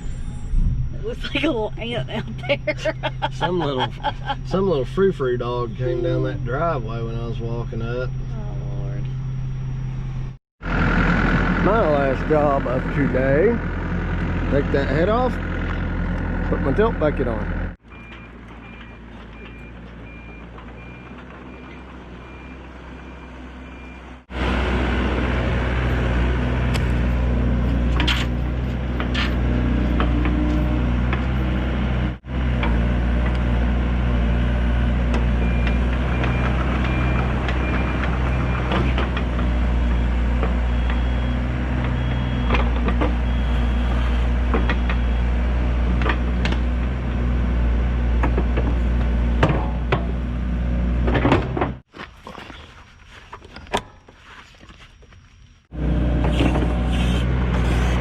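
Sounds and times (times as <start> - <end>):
diesel engine running: 0.0 - 51.9, 55.7 - 58.0
backup alarm beeping: 39.8 - 45.4.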